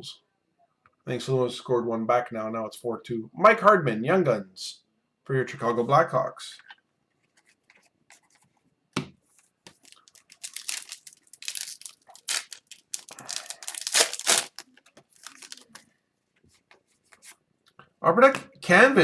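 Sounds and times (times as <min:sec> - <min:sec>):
foil wrapper tearing and crinkling: 0:09.8 - 0:15.8.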